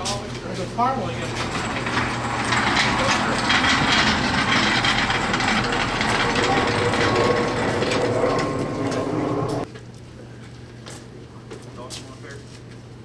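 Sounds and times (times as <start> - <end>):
machine engine running: 1.2 - 9.7.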